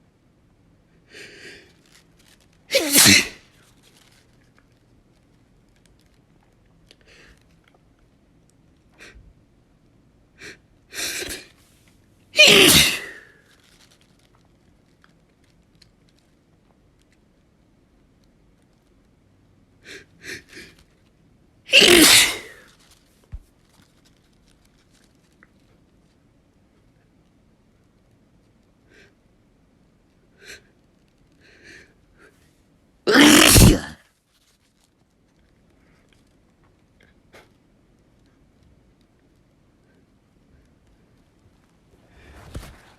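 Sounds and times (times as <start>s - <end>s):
person sneezing: 2.7s - 3.4s, 11.0s - 11.5s, 12.4s - 13.4s, 21.7s - 22.7s, 33.1s - 34.0s.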